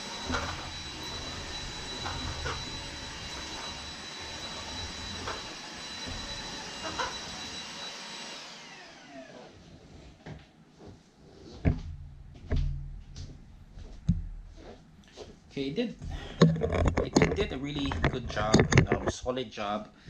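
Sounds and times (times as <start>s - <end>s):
motor spinning down: 0.0s - 9.5s
stick vacuum whine: 0.0s - 9.6s.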